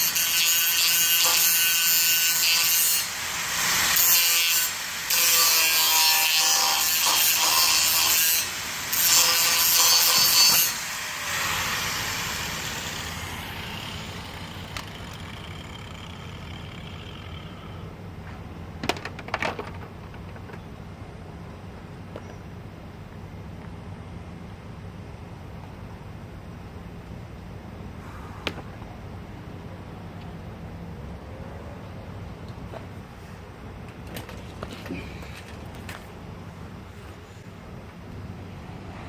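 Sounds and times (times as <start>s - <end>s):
angle grinder cutting metal: 0.0s - 17.8s.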